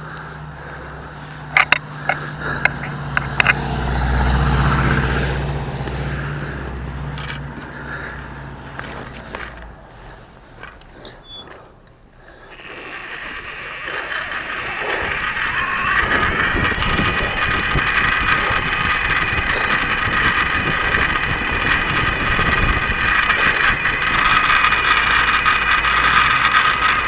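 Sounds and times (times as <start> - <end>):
electric bike motor whine: 12.5 - 27.0
wind rumble on microphone: 15.0 - 24.6.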